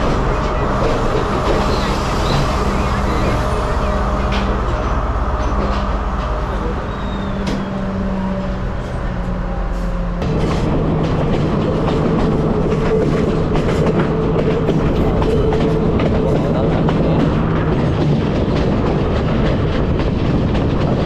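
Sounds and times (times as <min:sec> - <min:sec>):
diesel train engine drone: 0:00.0 - 0:21.0
train wheels clicking over rails: 0:10.2 - 0:21.0.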